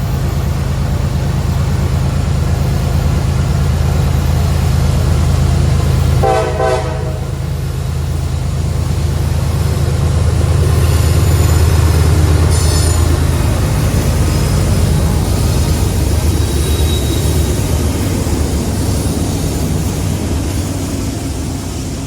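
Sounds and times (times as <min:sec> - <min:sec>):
diesel locomotive engine drone: 0:00.0 - 0:22.0
train horn blast: 0:06.2 - 0:07.5
high-pitched wheel squeal: 0:12.5 - 0:17.8.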